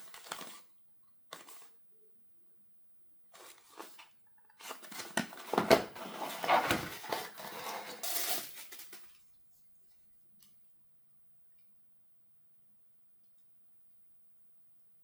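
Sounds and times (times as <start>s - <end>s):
packaging rustling and tearing: 4.6s - 8.3s.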